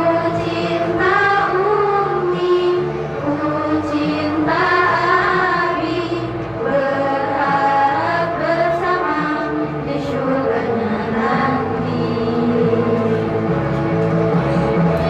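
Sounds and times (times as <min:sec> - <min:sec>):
choir singing: 0:00.0 - 0:15.0.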